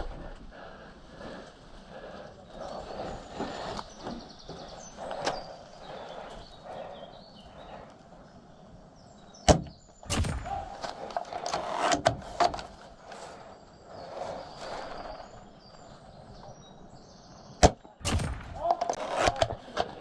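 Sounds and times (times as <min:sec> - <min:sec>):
rifle bolt clacking and sliding: 0:10.1 - 0:12.8
airsoft rifle firing snap: 0:17.6 - 0:19.6.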